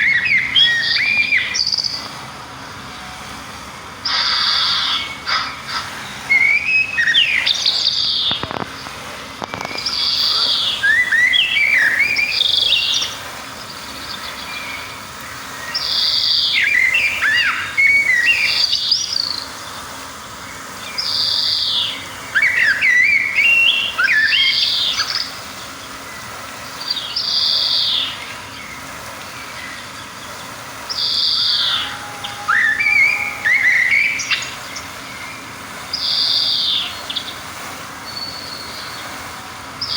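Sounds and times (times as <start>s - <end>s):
songbird warbling: 0.0s - 2.0s, 4.0s - 19.8s, 20.8s - 28.8s, 29.4s - 39.9s.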